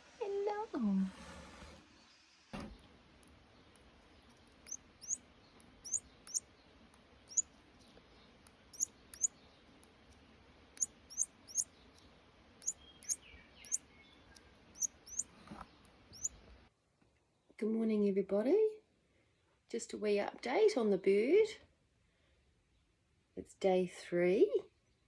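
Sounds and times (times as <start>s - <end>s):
baby bird cheeping: 4.2s - 6.5s, 7.3s - 7.9s, 8.7s - 9.4s, 10.8s - 11.8s, 12.6s - 15.3s, 16.1s - 16.4s.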